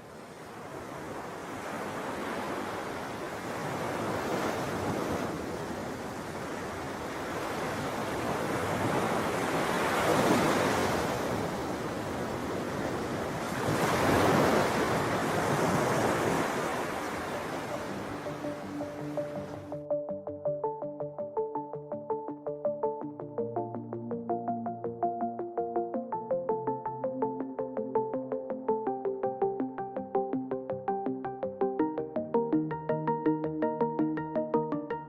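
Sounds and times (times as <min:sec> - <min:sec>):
ocean surf breaking: 0:00.4 - 0:19.7.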